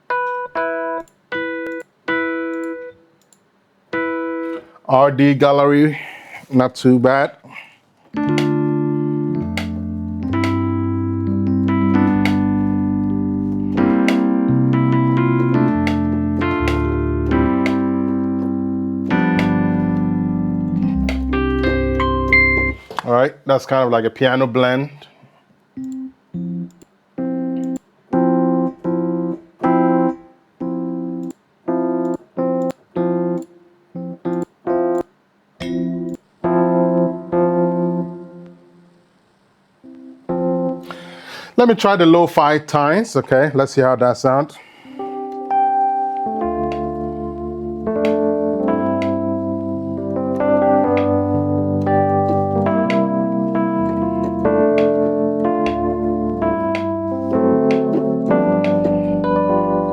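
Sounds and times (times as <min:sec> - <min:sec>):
electric piano chords: 0:00.0 - 0:03.3, 0:03.9 - 0:04.8, 0:08.2 - 0:22.9, 0:25.8 - 0:39.1, 0:39.8 - 0:41.4, 0:44.9 - 0:59.9
bass notes: 0:08.2 - 0:22.8, 0:46.2 - 0:59.9.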